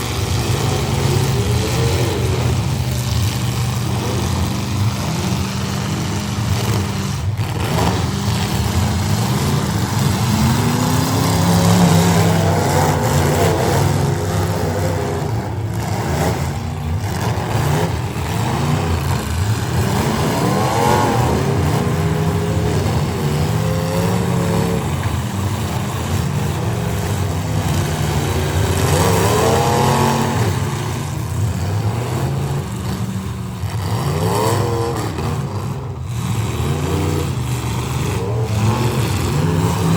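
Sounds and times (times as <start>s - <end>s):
car engines revving: 0.0s - 39.9s.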